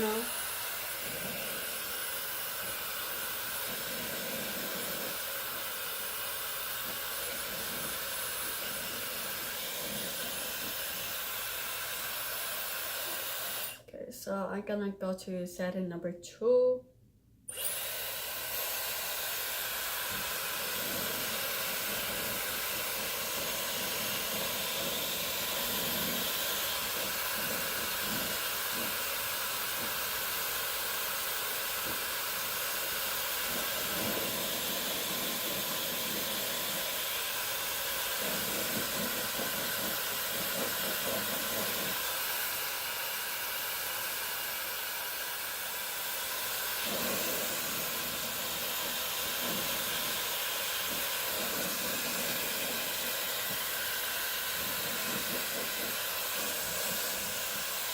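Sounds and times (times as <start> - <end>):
hair dryer blowing: 0.0 - 13.9, 17.5 - 57.9.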